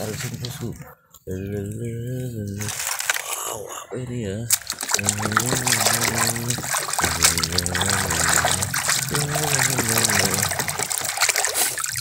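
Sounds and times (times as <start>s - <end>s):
water trickling and splashing: 2.5s - 3.4s, 4.5s - 12.0s.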